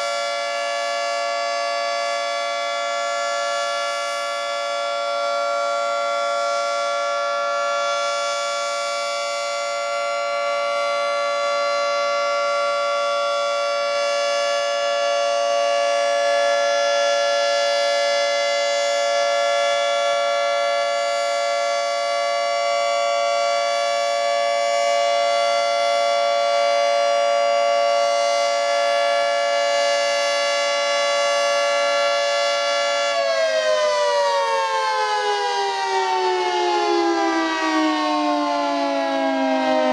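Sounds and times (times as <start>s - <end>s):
three-tone warning siren: 0.0s - 39.9s.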